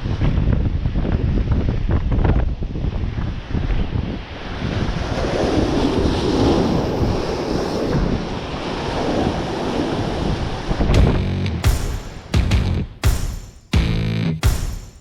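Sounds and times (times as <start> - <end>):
wind buffeting microphone: 0.0 - 11.4
ocean surf washing in: 2.8 - 13.6.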